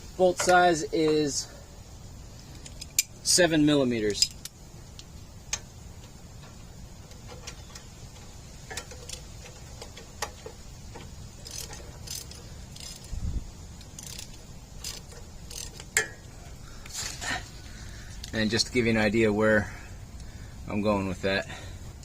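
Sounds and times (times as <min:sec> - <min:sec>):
metal tools clinking: 0:07.1 - 0:13.2, 0:13.8 - 0:16.3.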